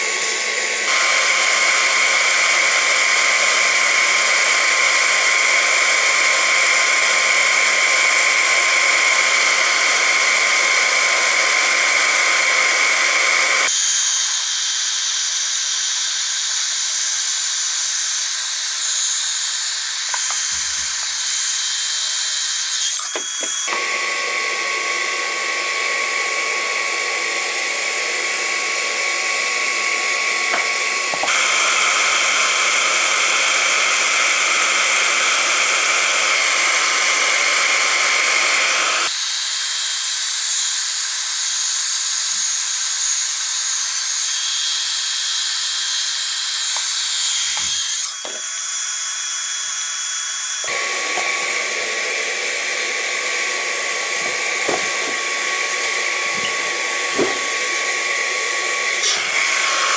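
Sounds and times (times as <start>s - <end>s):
hot-air welding gun hissing: 13.7s - 22.4s.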